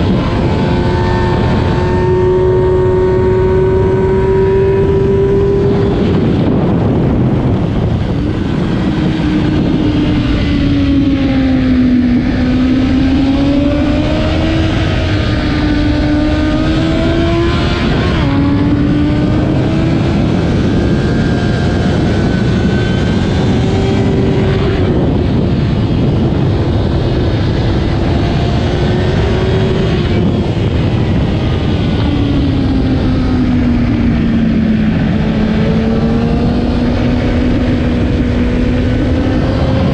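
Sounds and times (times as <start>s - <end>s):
loud wind rush: 0.0s - 39.9s
motorcycle engine at full throttle: 0.0s - 39.9s.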